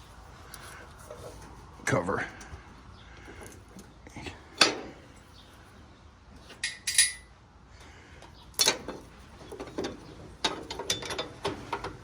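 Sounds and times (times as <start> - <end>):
metal clinks and knocks: 6.5 - 7.3.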